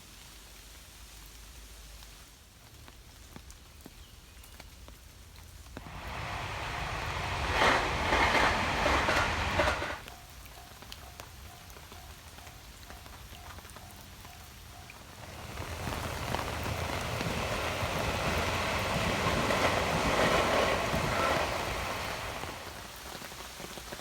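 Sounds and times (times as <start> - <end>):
steady rain falling: 0.0 - 24.0
loud rushing wind surge: 5.8 - 10.0.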